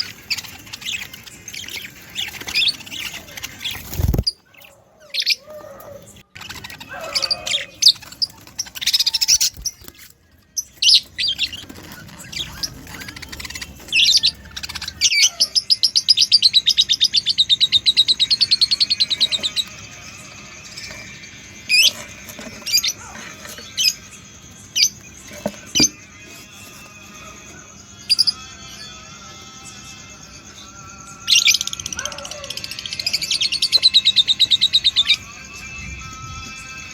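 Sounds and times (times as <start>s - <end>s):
budgerigars chirping: 0.0s - 20.0s.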